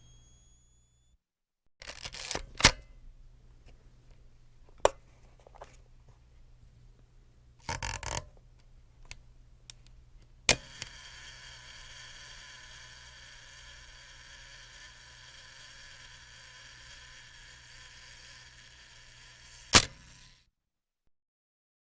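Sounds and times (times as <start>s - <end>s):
camera shutter clicks: 19.5s - 20.4s.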